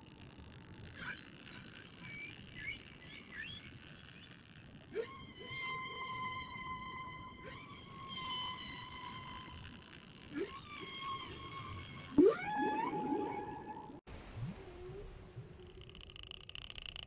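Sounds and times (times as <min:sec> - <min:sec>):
wavering gliding tones: 0:00.6 - 0:14.0.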